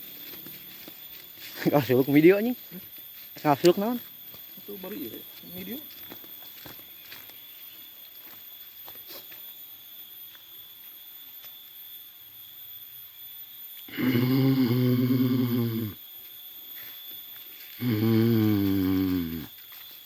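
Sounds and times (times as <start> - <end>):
steady high whine: 0.0 - 20.0
low drone call: 13.9 - 16.0, 17.8 - 19.5.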